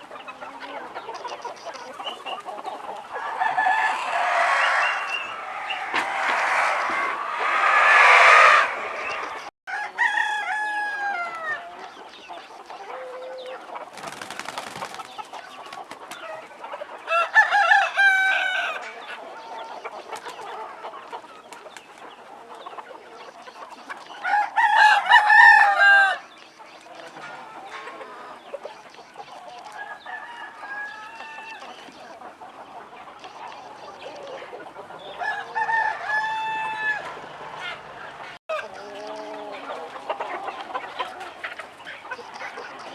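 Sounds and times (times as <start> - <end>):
roosters crowing: 0.0 - 12.0, 17.0 - 21.2, 24.1 - 26.4, 29.6 - 32.6, 33.3 - 42.9
chickens clucking: 0.0 - 42.9.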